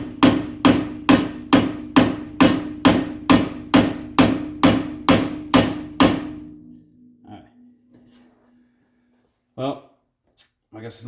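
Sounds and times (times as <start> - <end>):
hammer blows on metal: 0.0 - 6.8.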